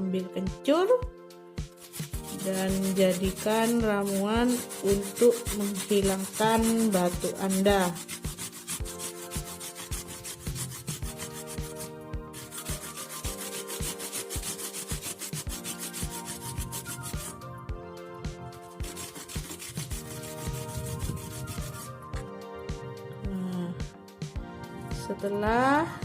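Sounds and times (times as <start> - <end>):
soft background music: 0.0 - 26.0
root rasping on hand grater: 1.7 - 17.4, 18.6 - 22.0.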